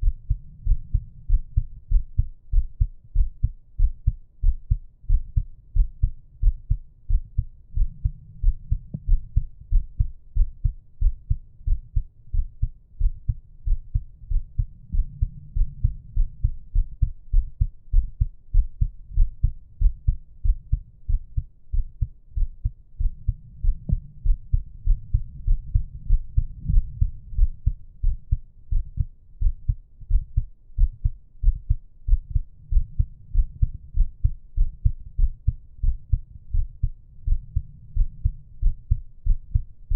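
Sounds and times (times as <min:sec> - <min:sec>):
heartbeat thumps: 0:00.0 - 0:39.9
faint slow breathing: 0:07.6 - 0:09.6, 0:14.2 - 0:16.7.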